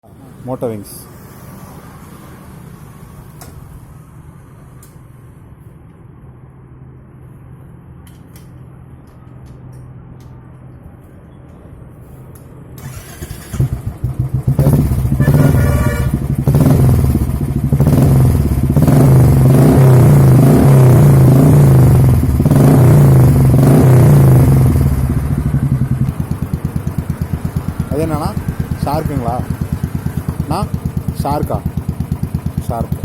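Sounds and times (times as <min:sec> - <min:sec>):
motorcycle engine revving: 0:12.8 - 0:33.0.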